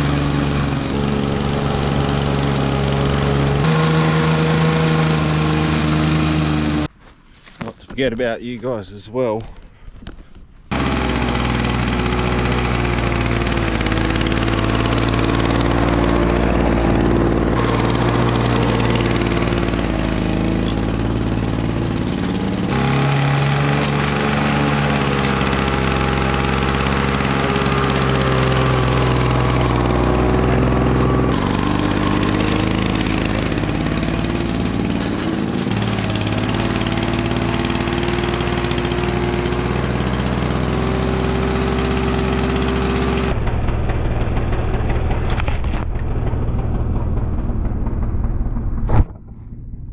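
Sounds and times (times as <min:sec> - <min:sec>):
lawn mower engine mowing: 0:00.0 - 0:06.9, 0:10.7 - 0:43.3.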